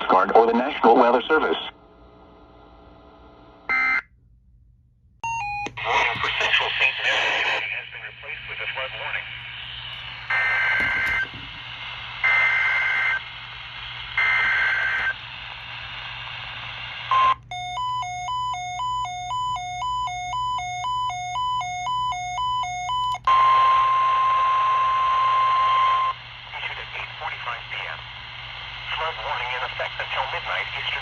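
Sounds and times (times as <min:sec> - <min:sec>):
steady warning alarm tone: 0:03.7 - 0:04.1, 0:05.2 - 0:06.3, 0:09.9 - 0:11.6, 0:17.1 - 0:26.2
two-pitch electronic alarm: 0:05.2 - 0:06.3, 0:10.3 - 0:11.4, 0:17.1 - 0:26.2.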